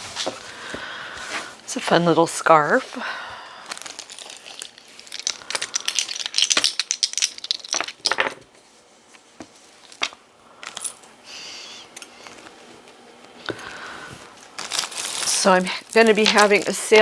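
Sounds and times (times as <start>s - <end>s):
plastic packaging crackling: 3.6s - 8.2s, 14.3s - 17.0s
jewelry clinking: 3.6s - 8.4s, 14.6s - 17.0s.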